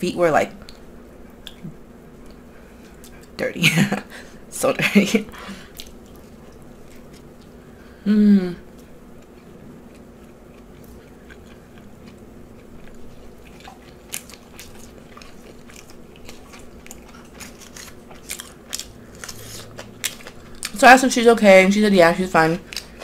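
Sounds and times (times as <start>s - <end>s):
chewing and biting food: 5.6s - 7.6s, 8.7s - 20.8s, 22.6s - 23.0s.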